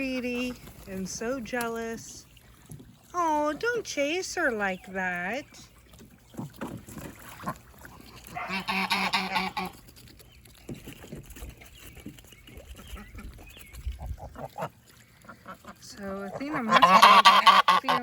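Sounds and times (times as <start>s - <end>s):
birds chirping: 0.0s - 6.6s, 7.8s - 18.0s
goose honking: 8.2s - 9.8s, 16.3s - 18.0s.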